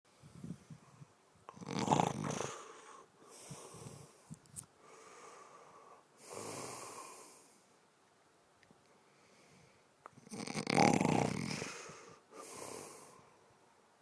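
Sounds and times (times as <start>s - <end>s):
person snoring: 1.5s - 4.2s, 6.2s - 7.5s, 10.2s - 13.2s
breathy exhale: 2.4s - 4.2s, 4.8s - 7.6s, 11.5s - 13.3s.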